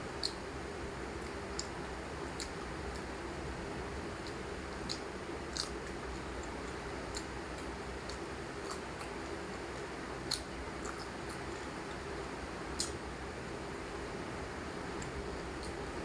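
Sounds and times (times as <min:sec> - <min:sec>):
steady background hiss: 0:00.0 - 0:16.0
wet mouth clicks and smacks: 0:00.2 - 0:00.4, 0:04.2 - 0:07.3, 0:10.2 - 0:11.4, 0:12.8 - 0:13.0.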